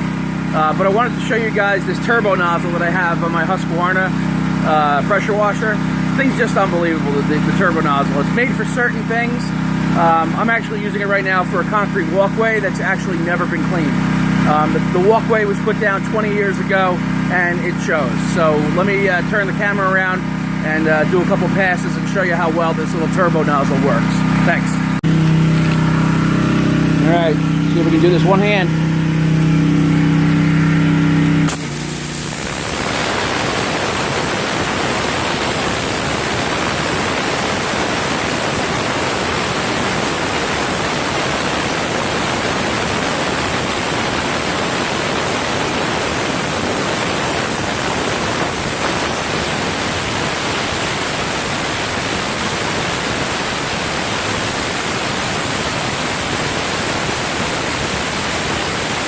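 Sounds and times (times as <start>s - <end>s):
pressure washer engine running: 0.0s - 59.0s
water spray hissing on concrete: 27.8s - 59.0s.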